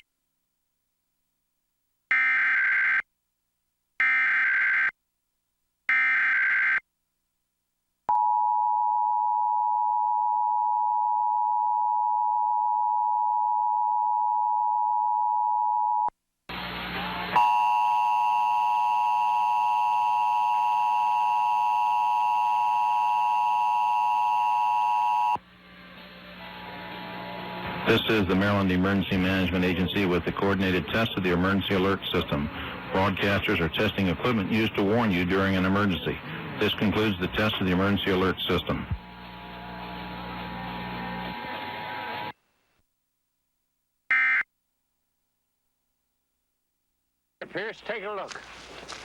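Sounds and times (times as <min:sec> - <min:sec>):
loud steady buzzing tone: 0:38.9 - 0:42.3.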